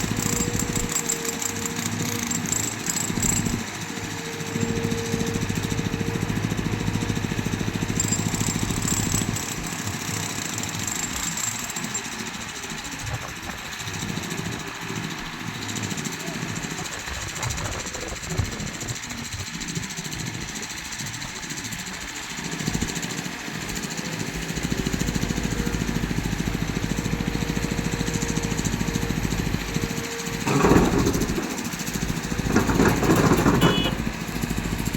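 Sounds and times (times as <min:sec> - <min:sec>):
diesel engine throbbing: 0:24.1 - 0:34.9.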